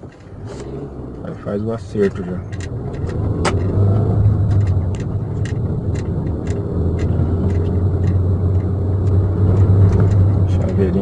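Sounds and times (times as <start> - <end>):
car cabin rumble while driving: 0.0 - 11.0.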